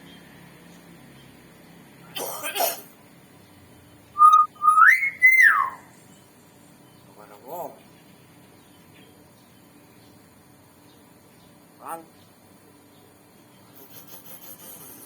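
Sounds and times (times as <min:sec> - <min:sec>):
myna whistling: 0:04.2 - 0:05.9.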